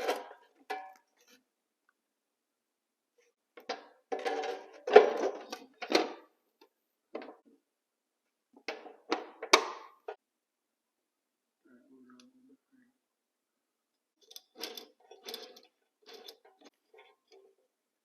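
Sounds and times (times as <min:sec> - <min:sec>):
metal parts knocking and clunking: 0:14.2 - 0:17.4.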